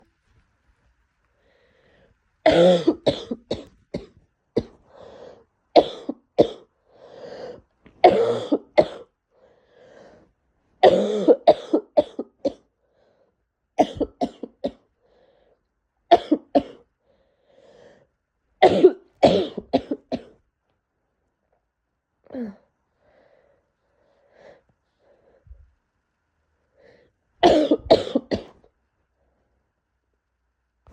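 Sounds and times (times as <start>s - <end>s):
person coughing congestedly: 2.5s - 4.8s, 5.8s - 6.7s, 8.0s - 9.1s, 10.8s - 12.6s, 13.8s - 14.8s, 16.1s - 16.8s, 18.6s - 20.4s, 27.4s - 28.6s.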